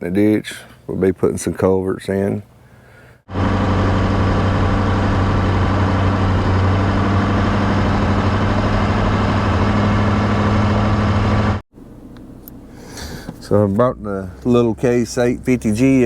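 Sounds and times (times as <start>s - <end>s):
engine idling: 3.3s - 13.5s.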